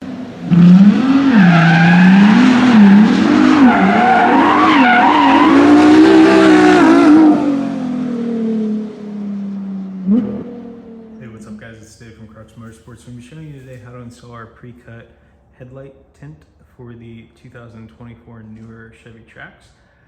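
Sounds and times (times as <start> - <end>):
car engine revving: 0.0 - 11.8
tyre squeal: 0.7 - 7.0.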